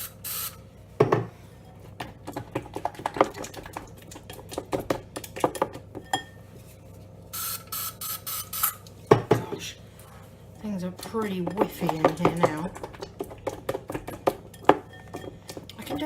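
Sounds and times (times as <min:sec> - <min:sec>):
aerosol can hissing sprays: 0:00.0 - 0:00.6
utensil knocking against bowl: 0:11.0 - 0:16.0.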